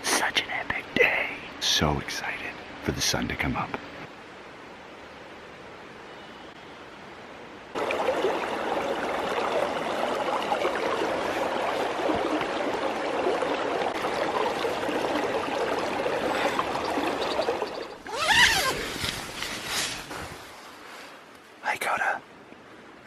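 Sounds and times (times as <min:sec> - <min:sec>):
faint hiss: 0:00.0 - 0:07.9, 0:15.1 - 0:23.0
stream babbling: 0:00.1 - 0:23.0.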